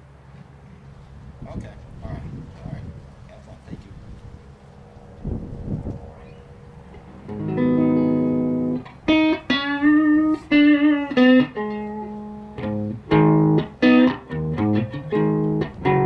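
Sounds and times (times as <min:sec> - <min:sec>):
electric guitar through tube amp: 0:05.0 - 0:16.0.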